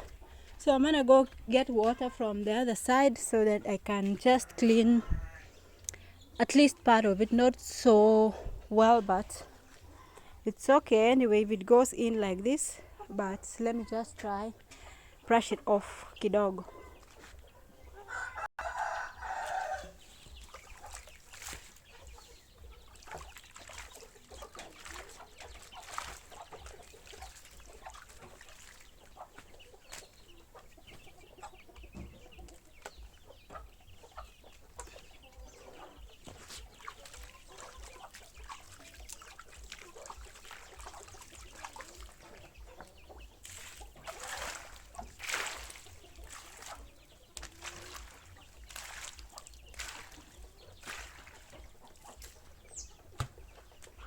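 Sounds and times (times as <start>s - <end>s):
chickens clucking: 0.0s - 10.5s, 12.4s - 54.0s.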